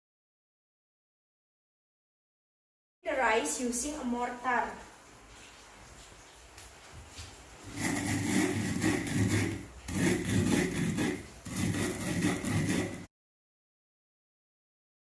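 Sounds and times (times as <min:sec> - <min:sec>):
pestle grinding rice in mortar: 0:07.6 - 0:13.1.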